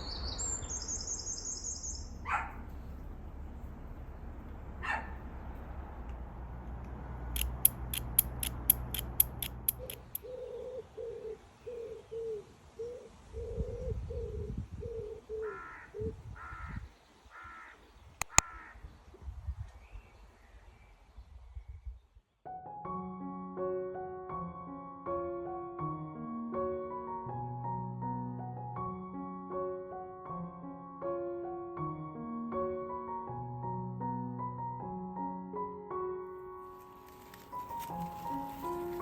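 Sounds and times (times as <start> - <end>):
sharp bird ticks: 7.4 - 10.3, 18.2 - 18.5.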